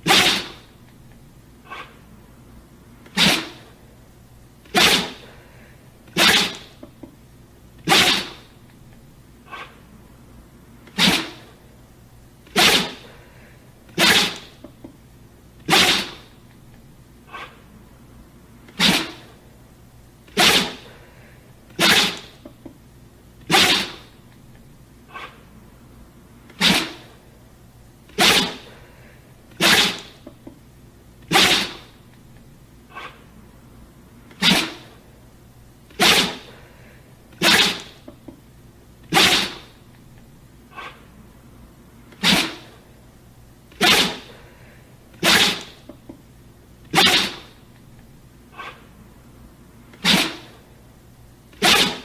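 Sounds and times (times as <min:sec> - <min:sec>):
dog sneezing: 0:00.0 - 0:00.8, 0:01.6 - 0:02.0, 0:03.0 - 0:03.7, 0:04.6 - 0:06.9, 0:07.8 - 0:08.5, 0:09.5 - 0:09.8, 0:10.8 - 0:11.6, 0:12.4 - 0:14.7, 0:15.6 - 0:16.4, 0:17.3 - 0:17.6, 0:18.7 - 0:19.4, 0:20.3 - 0:22.5, 0:23.4 - 0:24.2, 0:25.1 - 0:25.4, 0:26.5 - 0:27.2, 0:28.1 - 0:30.3, 0:31.3 - 0:32.0, 0:32.9 - 0:33.2, 0:34.3 - 0:35.0, 0:35.9 - 0:38.1, 0:39.1 - 0:39.8, 0:40.7 - 0:41.1, 0:42.1 - 0:42.8, 0:43.7 - 0:45.9, 0:46.9 - 0:47.6, 0:48.5 - 0:48.9, 0:50.0 - 0:50.6, 0:51.5 - 0:52.0.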